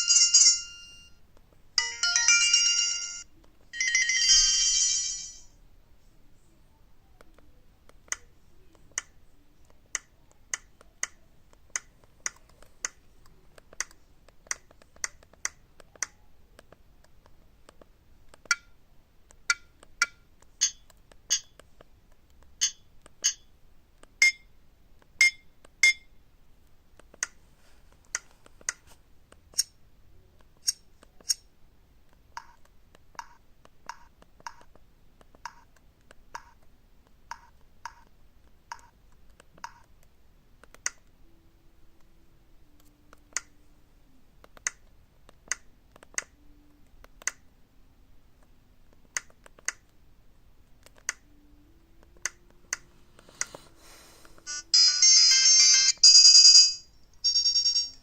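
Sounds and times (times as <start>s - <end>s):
phone keypad beeps: 24.2s - 24.5s, 25.2s - 26.1s.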